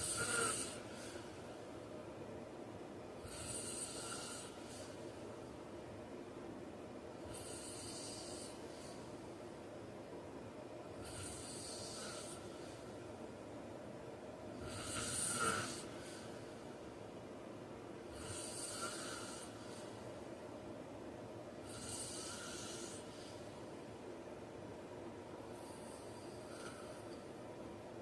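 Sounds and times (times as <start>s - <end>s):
man snoring: 0.0s - 1.3s, 3.2s - 5.0s, 7.3s - 8.6s, 11.0s - 12.5s, 14.6s - 16.3s, 18.1s - 19.9s, 21.6s - 23.1s.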